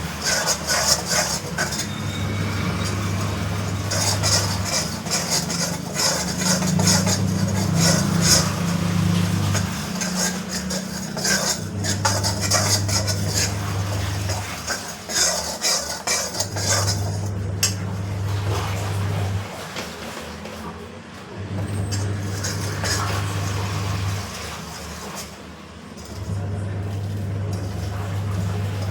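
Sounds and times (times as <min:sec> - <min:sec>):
spatula scraping metal pan: 0:00.0 - 0:19.5, 0:21.6 - 0:28.9
steady low hum: 0:02.8 - 0:19.4.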